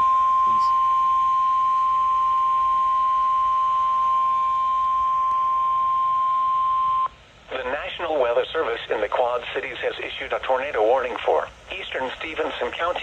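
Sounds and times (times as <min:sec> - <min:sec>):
steady alarm tone: 0:00.0 - 0:07.1.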